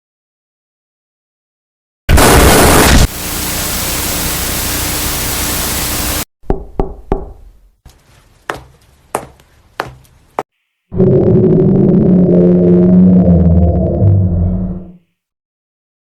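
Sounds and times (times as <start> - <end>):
loud static hiss: 2.1 - 6.3
sharp knocks: 6.4 - 7.5.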